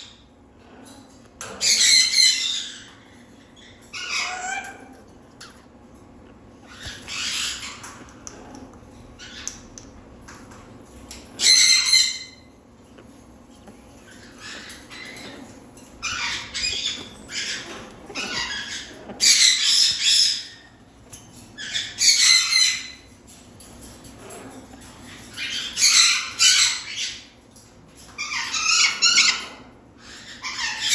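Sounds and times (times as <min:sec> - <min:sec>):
parrot squawking: 0:03.6 - 0:05.6, 0:06.6 - 0:08.1, 0:11.4 - 0:12.5, 0:14.1 - 0:20.7, 0:21.6 - 0:23.0, 0:25.4 - 0:27.3.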